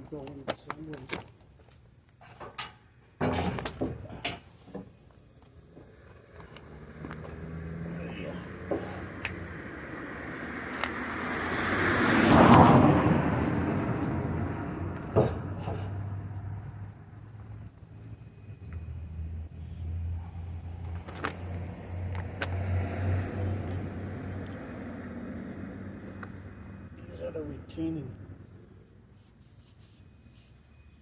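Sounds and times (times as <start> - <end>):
motor vehicle passing: 5.8 - 28.7.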